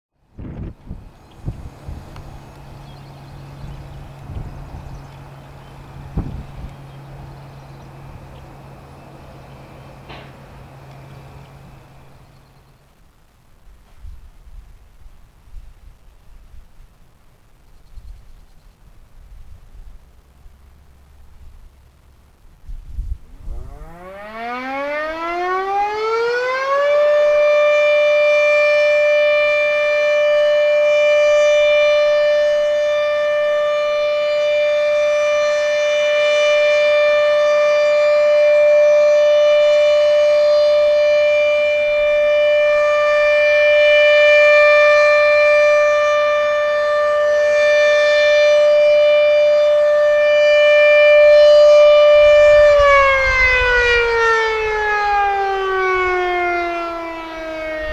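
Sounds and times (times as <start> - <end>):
warning siren: 0.1 - 12.7, 23.0 - 57.9.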